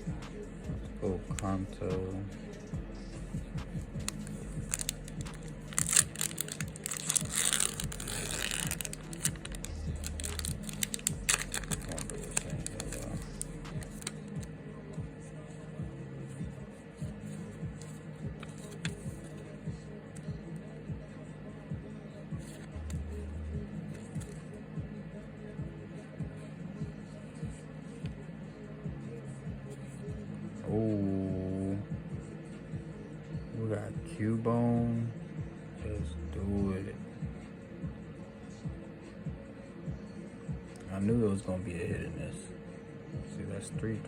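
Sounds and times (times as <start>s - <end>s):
background music: 0.0s - 44.0s
deep kick drum: 2.8s - 5.3s
trading cards flipped and rustling: 4.0s - 14.4s, 17.8s - 19.4s.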